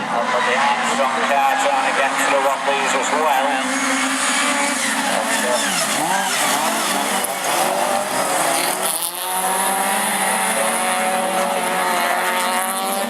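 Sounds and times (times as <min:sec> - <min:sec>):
race car engines revving: 0:00.0 - 0:13.0.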